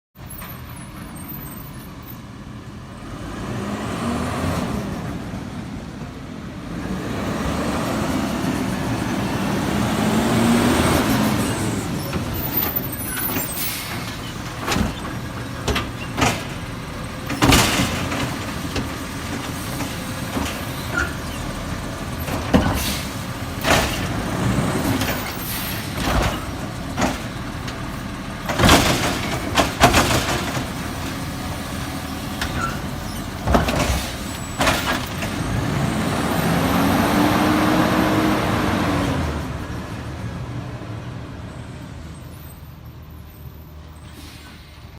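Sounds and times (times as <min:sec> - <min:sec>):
garbage truck engine: 0:00.2 - 0:44.9
loud bangs and clunks: 0:08.3 - 0:36.8.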